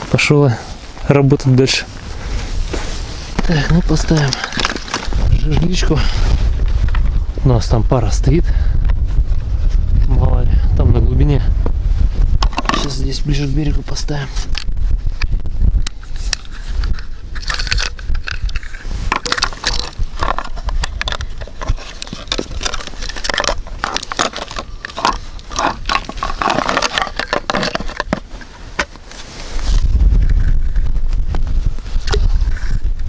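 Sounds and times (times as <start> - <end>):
wind rumble on microphone: 0.0 - 33.0
fishing gear scraping and clicking: 2.5 - 7.1, 12.4 - 13.0, 14.4 - 31.2.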